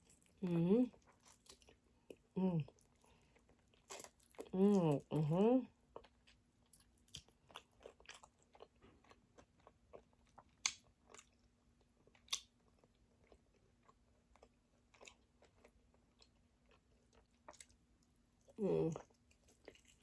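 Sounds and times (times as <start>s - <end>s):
chewing crispy food: 0.0s - 20.0s.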